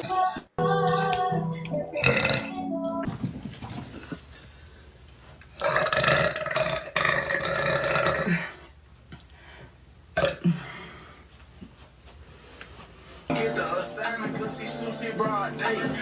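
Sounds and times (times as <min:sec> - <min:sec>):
woman burping: 0:02.0 - 0:02.5, 0:05.6 - 0:08.6, 0:10.2 - 0:10.7.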